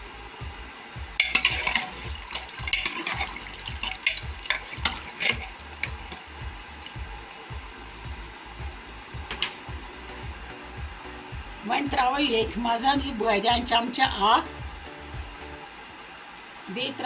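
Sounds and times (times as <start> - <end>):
meat splashing into water: 1.2 - 7.3
clinks in a pot: 1.2 - 7.4, 9.2 - 9.8.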